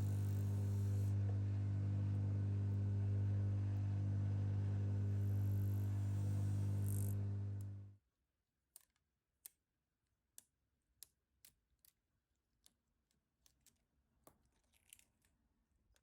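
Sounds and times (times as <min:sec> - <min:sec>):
small hard parts clicking: 0:10.4 - 0:16.0.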